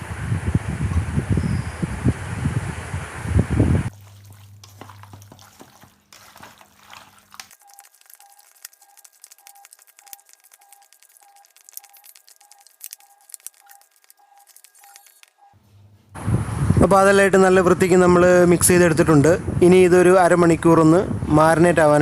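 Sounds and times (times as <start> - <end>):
wet squelches of mixing chicken: 3.9 - 15.4
small clicks and crackles: 4.2 - 15.6.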